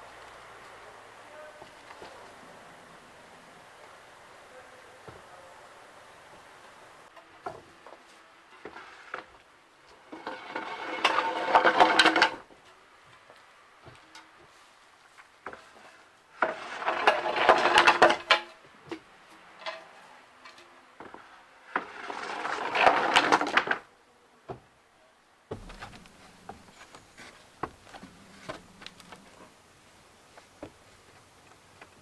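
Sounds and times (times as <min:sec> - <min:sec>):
rough scraping on wood: 0:10.0 - 0:12.4, 0:15.5 - 0:18.4, 0:21.0 - 0:23.8, 0:25.5 - 0:29.6
knocks on wood: 0:25.5 - 0:26.1.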